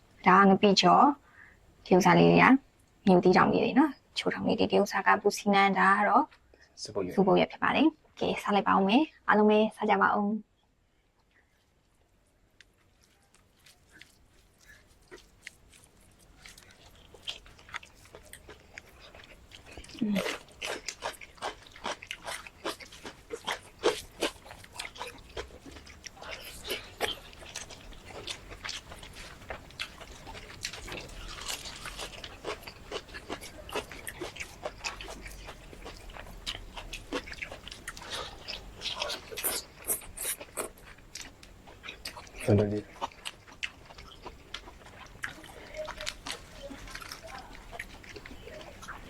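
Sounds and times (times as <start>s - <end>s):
chewing: 11.2s - 49.0s.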